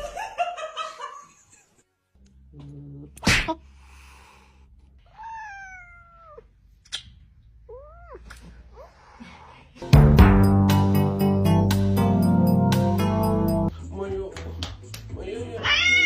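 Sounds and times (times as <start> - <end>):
cat meowing: 5.1 - 6.5, 7.7 - 8.4, 15.6 - 16.0.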